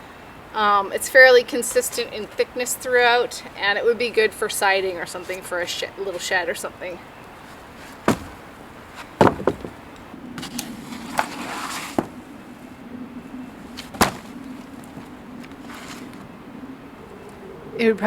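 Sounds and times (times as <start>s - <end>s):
faint steady hum: 0.0s - 18.0s
wooden knocks and clatters: 7.8s - 10.5s.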